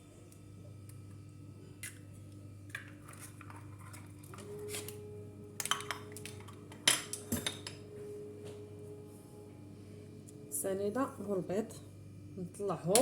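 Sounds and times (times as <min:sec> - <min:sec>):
dishes and utensils clinking: 0:05.6 - 0:07.8.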